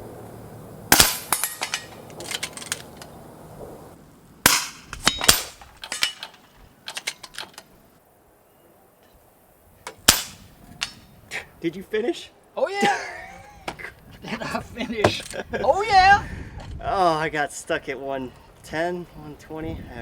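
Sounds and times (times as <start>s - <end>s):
air rifle shots: 0.9s - 2.0s, 4.4s - 6.2s, 9.9s - 11.0s.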